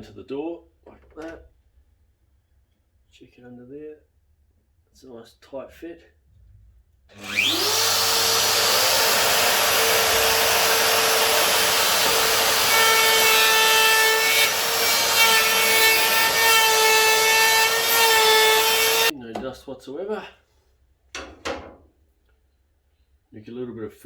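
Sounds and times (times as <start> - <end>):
router whining while routing wood: 7.1 - 19.1.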